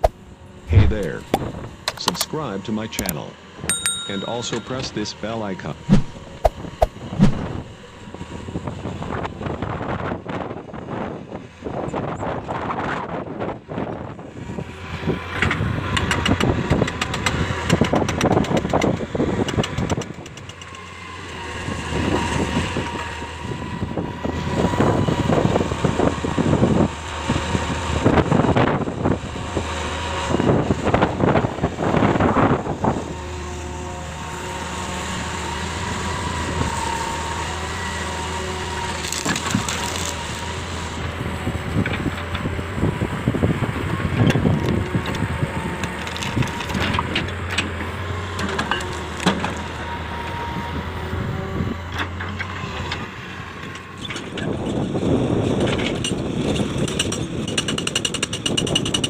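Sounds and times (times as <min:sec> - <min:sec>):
excavator engine and hydraulics: 0:00.0 - 0:59.0
crunching and scraping: 0:38.9 - 0:40.4.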